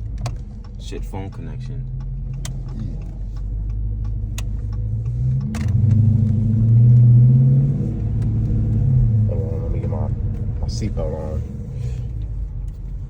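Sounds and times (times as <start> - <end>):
car engine revving: 0.0 - 13.0.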